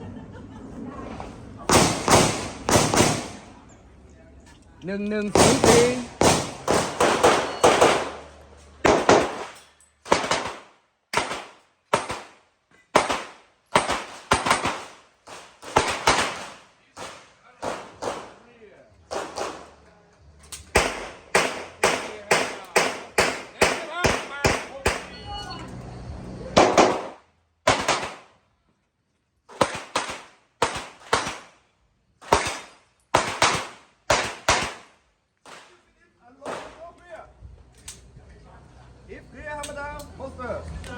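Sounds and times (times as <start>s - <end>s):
pistol shots: 1.7s - 3.5s, 5.3s - 18.4s, 19.1s - 19.8s, 20.6s - 25.1s, 26.6s - 28.3s, 29.5s - 31.6s, 32.2s - 35.7s, 36.4s - 36.8s.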